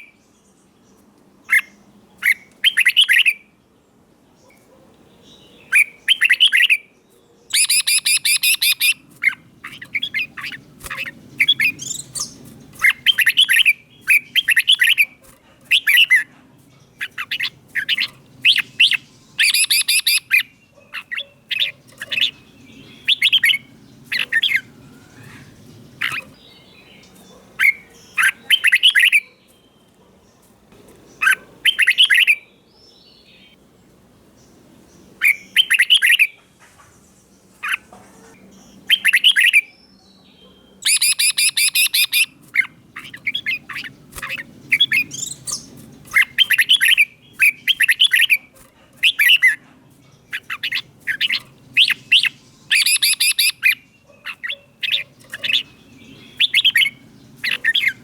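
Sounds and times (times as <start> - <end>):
bird singing warbled phrases: 0.0 - 58.0.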